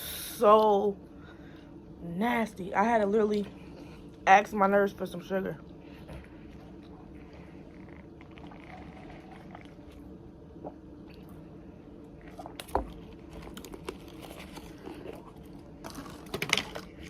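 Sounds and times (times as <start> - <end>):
steady low hum: 0.0 - 17.0
chewing and crunching food: 5.6 - 11.4, 12.1 - 17.0.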